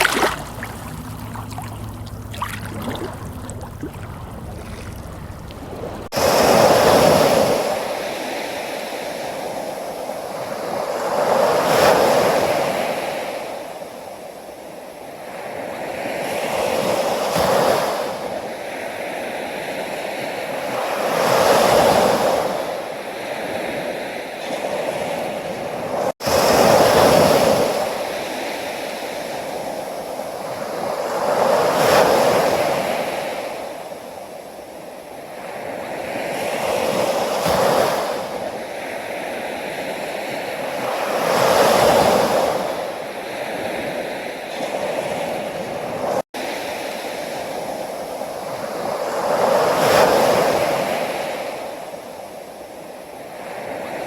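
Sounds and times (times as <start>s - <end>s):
sea waves breaking on shore: 0.0s - 9.7s.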